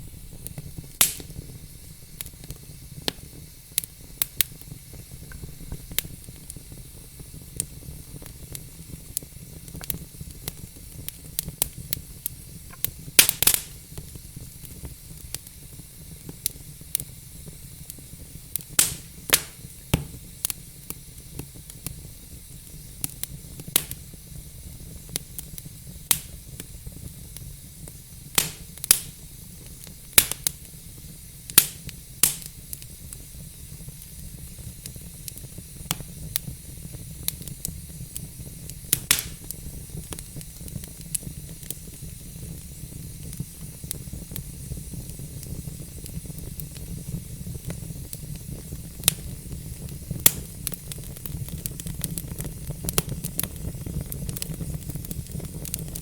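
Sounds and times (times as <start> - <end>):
fire pops and snaps: 0.0 - 56.0
fire rumble and hiss: 0.0 - 56.0.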